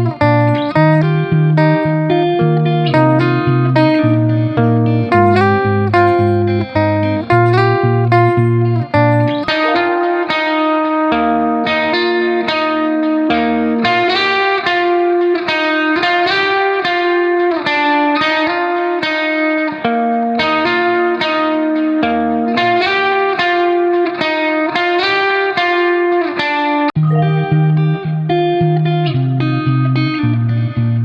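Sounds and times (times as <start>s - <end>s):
plucked-string melody: 0.0s - 15.6s, 27.0s - 30.5s.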